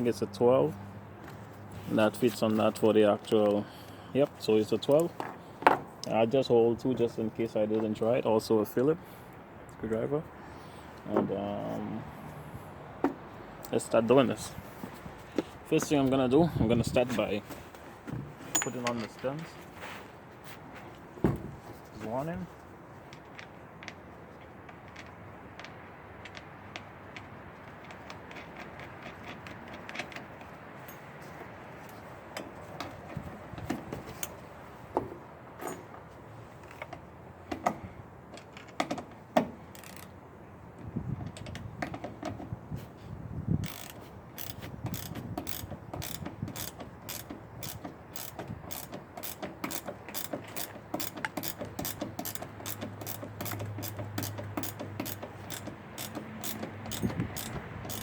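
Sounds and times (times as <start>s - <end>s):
tools and parts knocking: 5.2s - 5.9s, 18.0s - 19.2s, 36.7s - 40.1s, 41.2s - 42.5s, 43.6s - 58.0s
ratchet wrench clicking: 39.7s - 40.1s, 43.6s - 58.0s.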